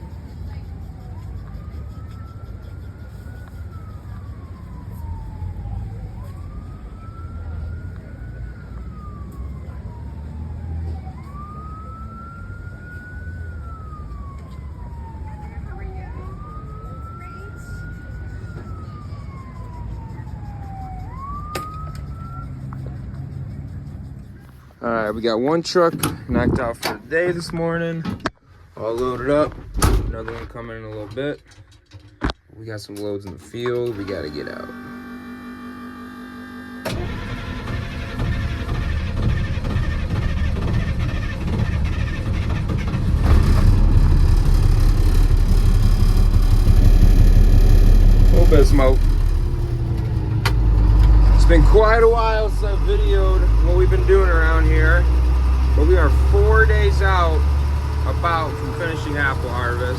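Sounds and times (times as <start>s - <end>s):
siren wailing: 0.0s - 23.7s, 33.9s - 59.9s
truck engine running: 0.0s - 27.8s, 33.6s - 59.9s
steady low rumble: 40.0s - 55.1s.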